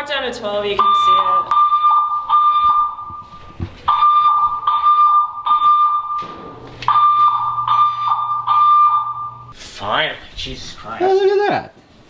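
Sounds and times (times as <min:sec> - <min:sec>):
fire alarm pulsing horn: 0:00.7 - 0:09.6.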